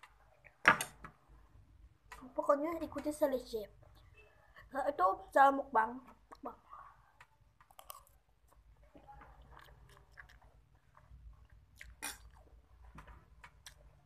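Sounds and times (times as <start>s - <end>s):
person chewing food: 7.2s - 14.0s.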